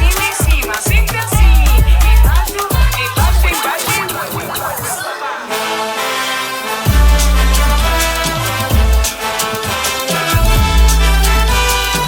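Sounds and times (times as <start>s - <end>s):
kick drum: 0.0s - 3.8s, 6.9s - 7.4s, 8.6s - 9.2s, 10.4s - 11.6s
bass note: 6.9s - 9.1s, 10.4s - 12.0s.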